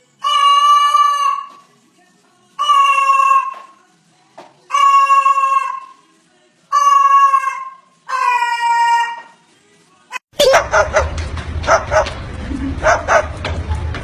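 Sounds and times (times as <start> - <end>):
low rumble: 10.6 - 14.0.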